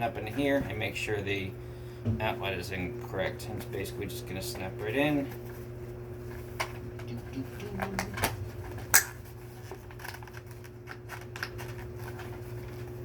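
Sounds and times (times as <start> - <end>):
sharp plastic snap: 8.9 - 9.2.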